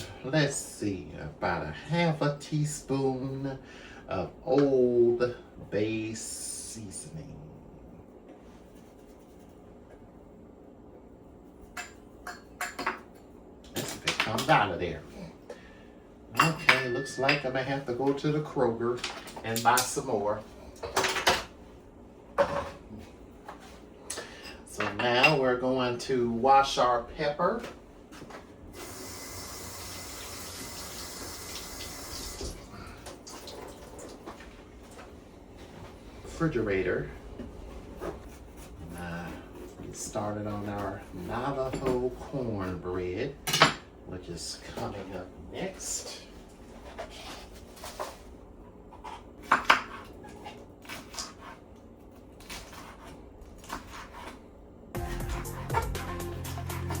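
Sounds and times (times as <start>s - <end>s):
dishes and utensils clinking: 16.4s - 17.6s
tap water running: 28.8s - 34.4s
background music: 55.0s - 57.0s.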